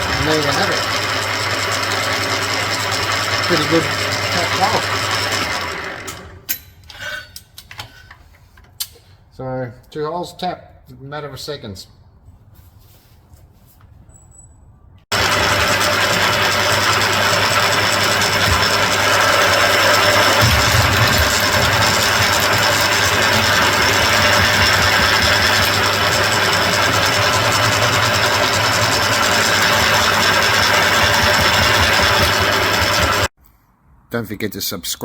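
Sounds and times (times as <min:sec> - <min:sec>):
mill drill running: 0:00.0 - 0:06.4, 0:15.1 - 0:33.4.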